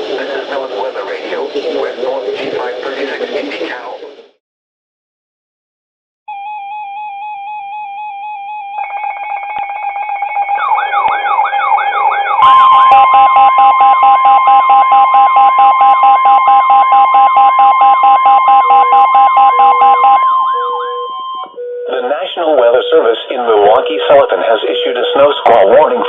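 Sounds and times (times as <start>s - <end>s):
steady weather radio alert tone: 0.0s - 4.2s, 9.6s - 26.0s
rising and falling siren whoop: 6.3s - 21.6s
warbling alarm tones: 6.3s - 26.0s
rapid beeping: 10.4s - 26.0s.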